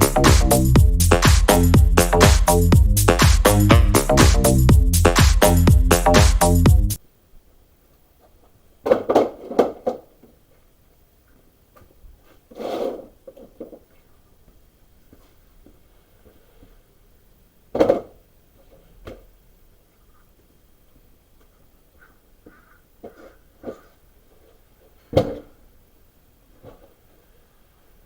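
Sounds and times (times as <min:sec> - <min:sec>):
objects knocking and clunking: 0:08.8 - 0:10.4, 0:17.7 - 0:19.3
rubbing scrape: 0:12.2 - 0:13.2.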